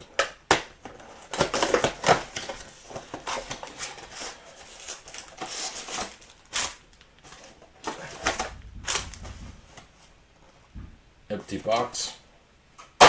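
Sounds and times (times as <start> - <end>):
plastic wrap crackling and tearing: 1.2 - 9.4.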